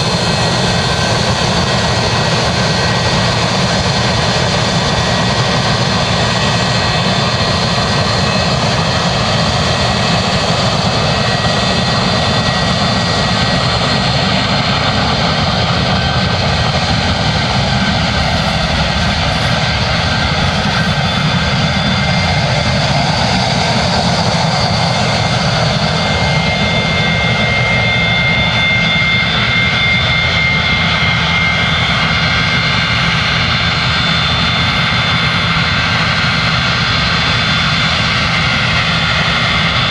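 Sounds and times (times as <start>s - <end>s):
jet engines roaring: 0.0s - 39.9s
high whining tones: 15.6s - 24.4s.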